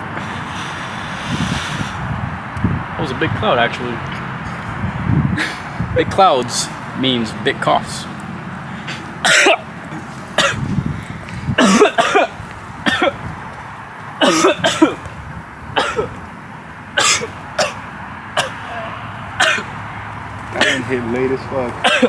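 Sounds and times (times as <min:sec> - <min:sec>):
man clearing throat: 0:08.9 - 0:10.7, 0:11.6 - 0:13.2, 0:14.2 - 0:15.0, 0:15.8 - 0:16.2, 0:17.0 - 0:17.8, 0:18.4 - 0:19.7, 0:20.6 - 0:21.0
man coughing hard: 0:08.9 - 0:10.7, 0:11.6 - 0:13.3, 0:14.2 - 0:15.0, 0:15.8 - 0:16.2, 0:17.0 - 0:17.8, 0:18.4 - 0:19.7, 0:20.6 - 0:21.0, 0:21.8 - 0:22.0.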